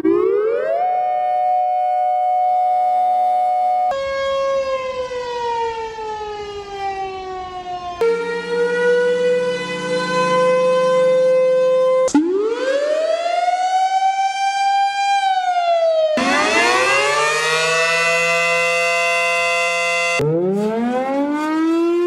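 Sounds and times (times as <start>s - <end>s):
tornado warning sirens: 0.0s - 22.0s.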